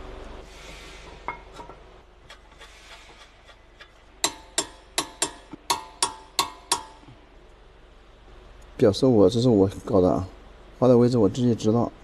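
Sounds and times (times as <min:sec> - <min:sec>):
sharp ringing metal taps: 0:04.2 - 0:07.1.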